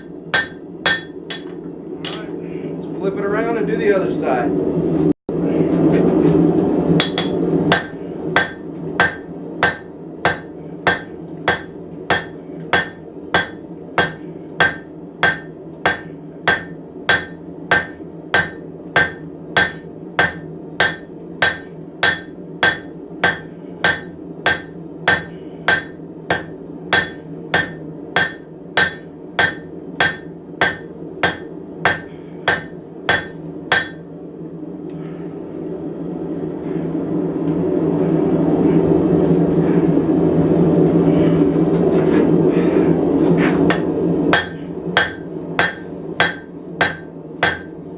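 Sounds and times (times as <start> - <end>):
hammer striking steel on anvil: 0.0 - 2.5, 7.0 - 34.2, 43.7 - 47.9.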